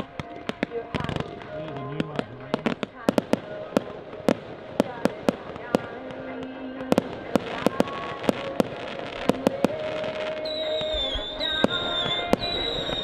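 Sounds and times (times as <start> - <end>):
fireworks bangs and crackles: 0.0 - 13.0
steady high whistle: 10.2 - 13.0.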